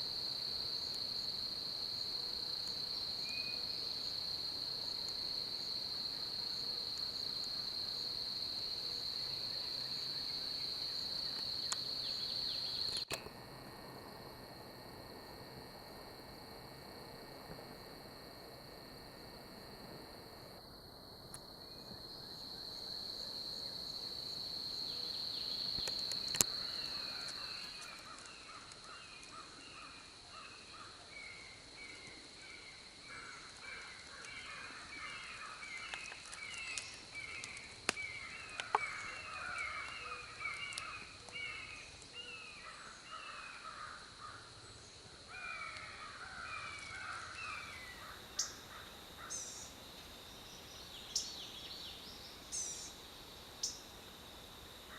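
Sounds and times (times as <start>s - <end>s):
birds calling in woodland: 8.9s - 13.2s, 24.8s - 53.9s
sharp clicks: 12.9s - 13.3s.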